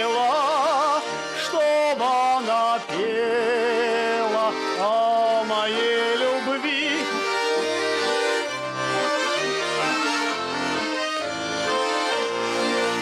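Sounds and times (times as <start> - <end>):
button accordion melody: 0.0 - 13.0.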